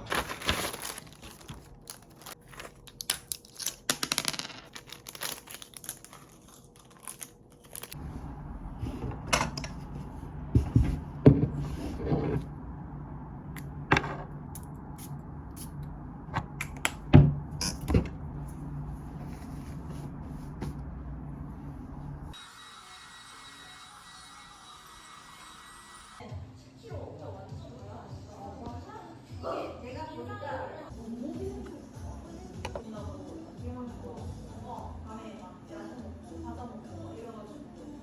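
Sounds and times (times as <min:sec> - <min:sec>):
crinkling handling noise: 0:00.0 - 0:03.9, 0:04.6 - 0:08.0
steady low hum: 0:06.6 - 0:22.4.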